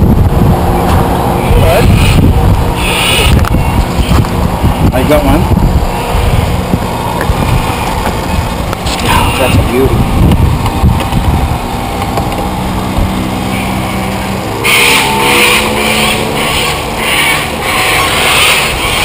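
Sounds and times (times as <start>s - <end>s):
model boat engine humming: 0.0s - 19.0s.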